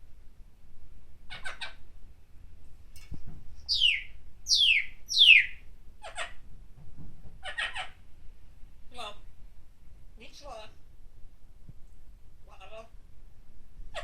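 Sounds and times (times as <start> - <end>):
parrot whistling: 3.7 - 5.6
parrot rasping calls: 3.7 - 6.4.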